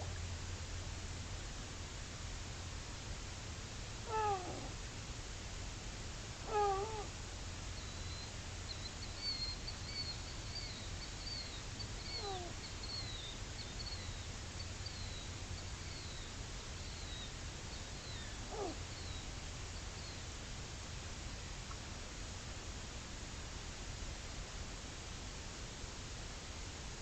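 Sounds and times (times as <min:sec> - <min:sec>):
background hiss: 0:00.0 - 0:27.0
falling animal cries: 0:04.1 - 0:04.8, 0:06.4 - 0:07.1, 0:12.2 - 0:12.5, 0:18.5 - 0:18.8
faint high bird chirps: 0:07.8 - 0:19.2.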